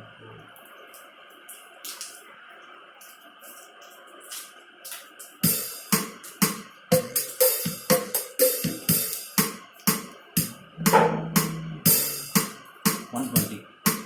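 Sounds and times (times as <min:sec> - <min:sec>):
keyboard waltz drum rhythm: 0:05.4 - 0:14.0.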